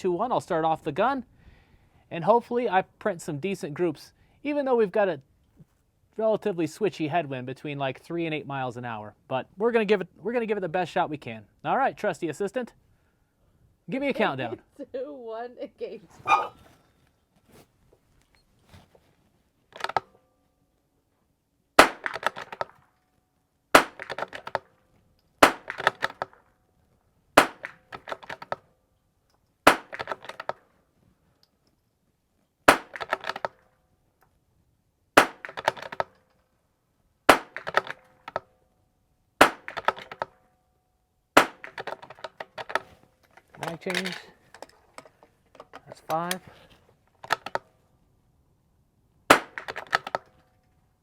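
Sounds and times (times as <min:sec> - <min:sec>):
rifle bolt clicking: 0:19.8 - 0:20.1
rifle shots cracking: 0:21.8 - 0:22.8, 0:23.8 - 0:24.6, 0:25.4 - 0:26.4, 0:27.4 - 0:28.5, 0:29.7 - 0:30.6, 0:32.7 - 0:33.6, 0:35.2 - 0:36.0, 0:37.3 - 0:38.3, 0:39.4 - 0:40.3, 0:41.4 - 0:42.8, 0:49.3 - 0:50.2.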